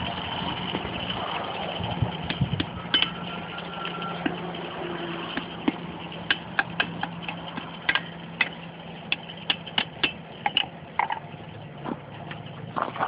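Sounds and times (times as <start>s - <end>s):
low hum: 0.0s - 13.0s
hammer striking iron on anvil: 2.2s - 4.5s, 5.2s - 10.7s.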